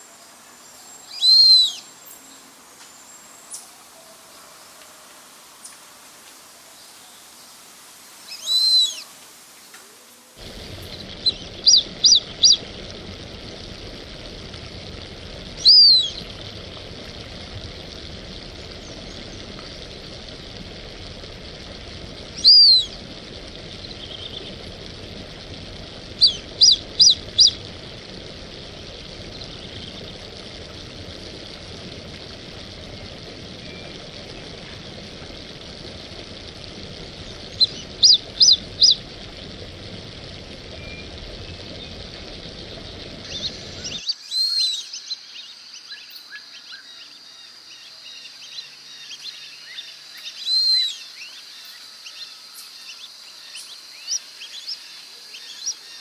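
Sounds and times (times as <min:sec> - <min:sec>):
steady hiss: 0:00.0 - 0:56.0
duck whistling calls: 0:01.1 - 0:01.8, 0:08.4 - 0:09.0, 0:22.4 - 0:23.0, 0:26.2 - 0:27.6, 0:37.6 - 0:39.0.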